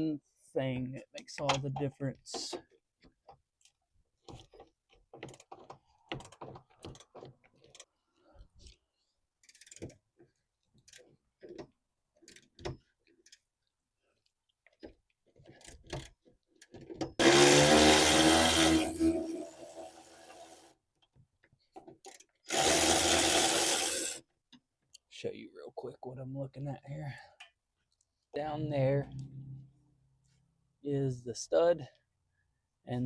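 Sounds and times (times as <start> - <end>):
small power tool motor: 17.2 - 20.7, 22.5 - 24.2.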